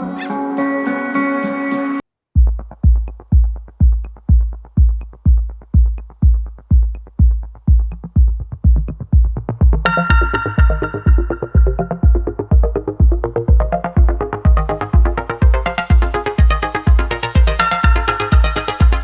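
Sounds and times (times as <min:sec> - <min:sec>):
electronic dance music: 0:02.4 - 0:19.0
synth melody: 0:09.7 - 0:19.0.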